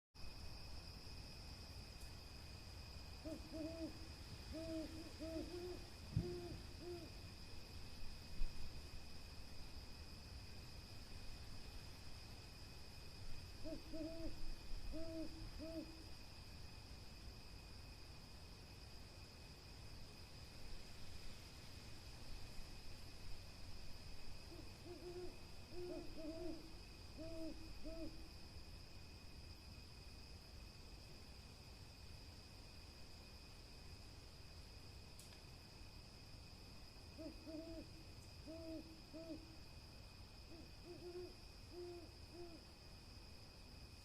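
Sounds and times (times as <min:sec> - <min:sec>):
high insect trill: 0:00.2 - 0:44.0
owl hooting: 0:03.2 - 0:07.2, 0:13.6 - 0:16.0, 0:24.5 - 0:28.3, 0:37.2 - 0:39.6, 0:40.5 - 0:42.6.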